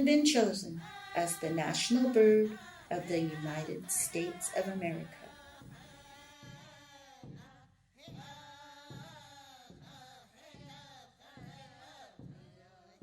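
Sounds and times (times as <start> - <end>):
person singing or chanting: 0.0 - 5.7
steady drum beat: 0.0 - 12.6.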